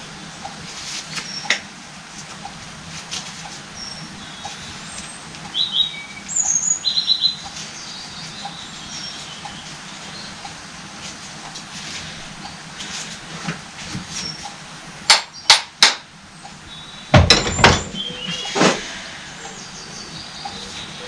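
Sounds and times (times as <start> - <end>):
steady low hum: 0.0 - 21.0
small bird chirping: 3.5 - 10.5, 17.9 - 21.0.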